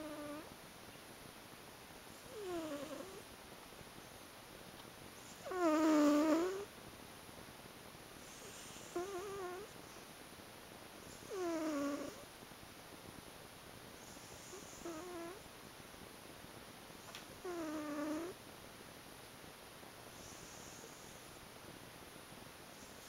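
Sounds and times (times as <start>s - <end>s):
cat snoring: 0.0s - 0.5s, 2.2s - 3.2s, 5.2s - 6.7s, 8.2s - 9.7s, 11.1s - 12.3s, 14.0s - 15.4s, 17.4s - 18.4s, 20.2s - 21.3s.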